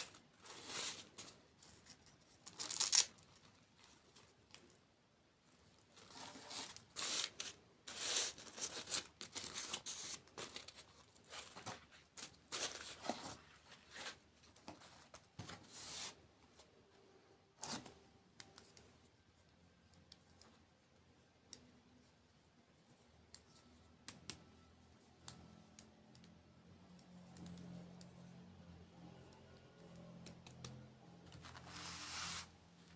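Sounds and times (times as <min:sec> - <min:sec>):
packaging tearing and crinkling: 0:02.4 - 0:03.2.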